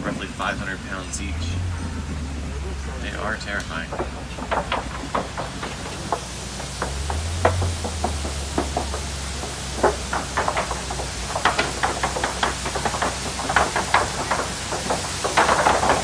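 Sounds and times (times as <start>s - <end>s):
low engine drone: 0.0s - 4.5s
truck rattling and knocking: 0.0s - 16.0s.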